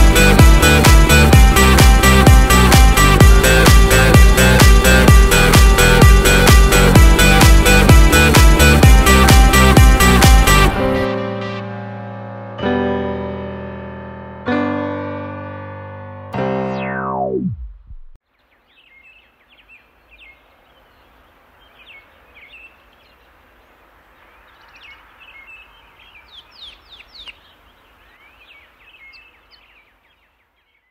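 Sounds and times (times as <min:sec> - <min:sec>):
electronic music chord sliding down: 0:00.0 - 0:18.2
faint outdoor hiss: 0:18.2 - 0:30.9
songbirds chirping: 0:18.2 - 0:30.9.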